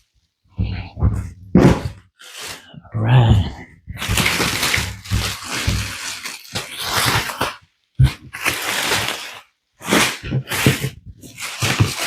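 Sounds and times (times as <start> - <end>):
packaging rustling and scraping: 0.8 - 2.7, 3.9 - 12.0
dull knocks of handling: 3.4 - 6.1.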